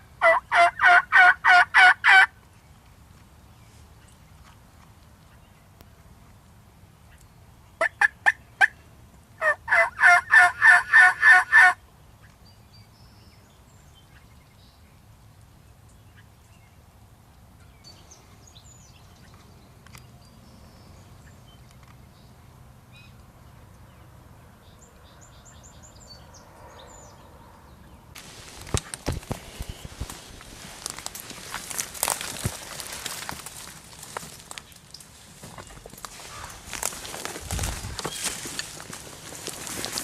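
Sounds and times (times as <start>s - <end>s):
turkey gobbling: 0.2s - 2.3s, 9.4s - 11.8s
sharp turkey calls: 0.2s - 2.4s, 7.8s - 8.8s, 9.4s - 11.8s.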